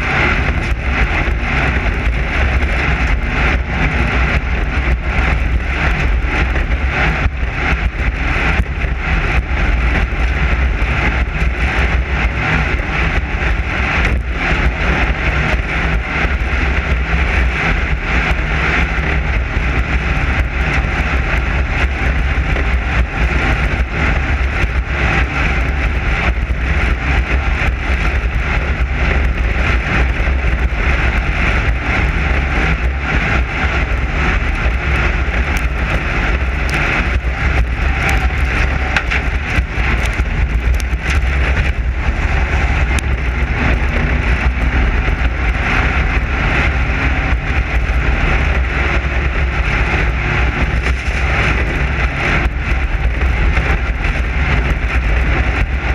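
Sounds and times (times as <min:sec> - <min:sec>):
race car engine drone: 0:00.0 - 0:55.9
knocks and rattles: 0:34.6 - 0:45.2.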